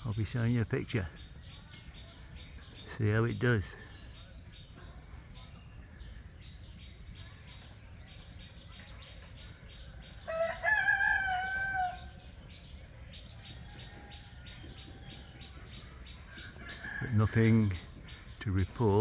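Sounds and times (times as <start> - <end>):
faint outdoor background: 0.0 - 19.0
rooster crowing: 10.2 - 12.2.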